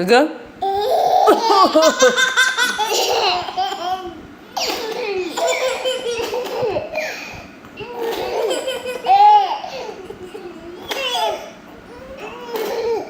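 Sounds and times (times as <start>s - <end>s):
baby laughing: 0.6s - 13.0s
child coughing: 4.6s - 7.2s.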